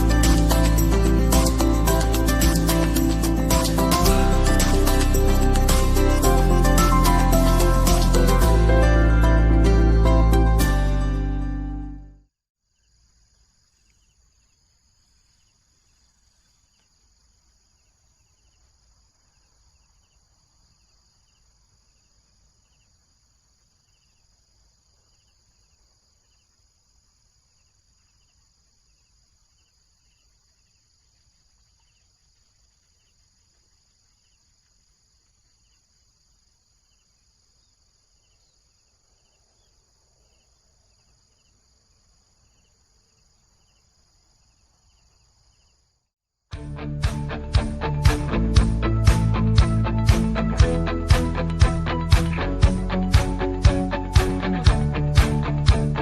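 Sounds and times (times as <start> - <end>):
cricket chirping: 0.0 - 9.0, 12.6 - 46.1
insects buzzing: 12.6 - 46.0.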